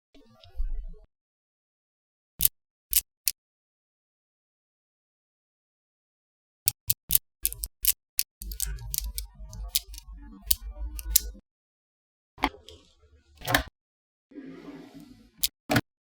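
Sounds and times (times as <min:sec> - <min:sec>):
magnetic balls clicking: 0:06.7 - 0:11.4.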